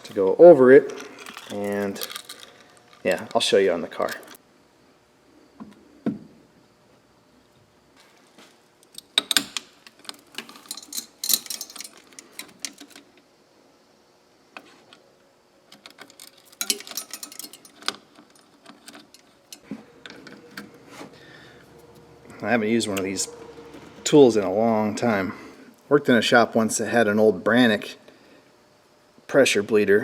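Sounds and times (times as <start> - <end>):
metal hardware clicking and rattling: 0.0 - 4.4, 8.9 - 13.1, 15.7 - 24.0.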